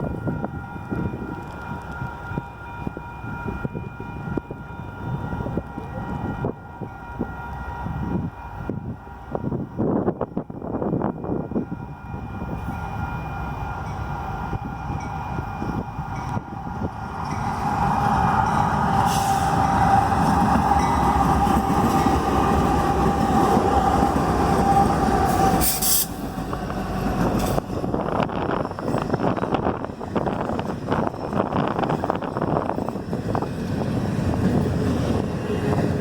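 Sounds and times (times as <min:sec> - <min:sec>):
train passing with heavy rumble: 0:00.0 - 0:36.0.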